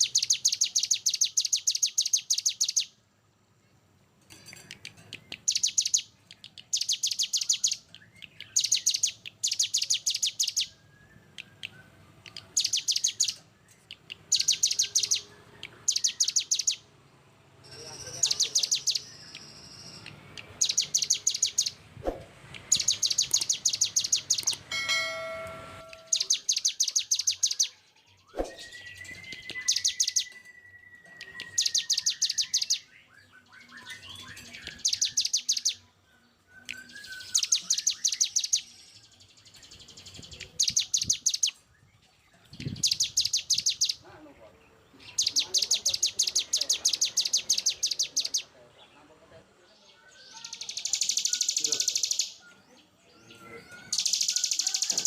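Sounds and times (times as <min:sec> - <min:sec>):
songbird singing rapid harsh notes: 0:00.0 - 0:03.0, 0:04.6 - 0:16.9, 0:17.6 - 0:24.7, 0:25.8 - 0:36.0, 0:36.6 - 0:49.0, 0:49.7 - 0:55.0
long steady bird whistle: 0:06.7 - 0:13.5, 0:14.3 - 0:16.8, 0:17.9 - 0:21.8, 0:25.9 - 0:35.8, 0:36.5 - 0:39.5.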